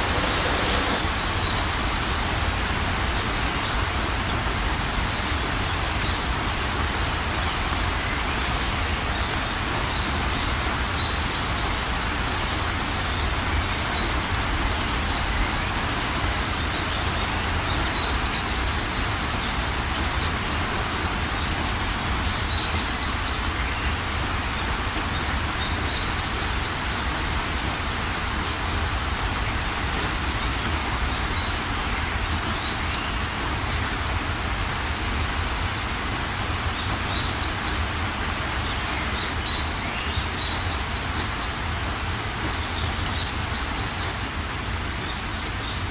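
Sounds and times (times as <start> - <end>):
rushing ambient noise: 0.0 - 1.3.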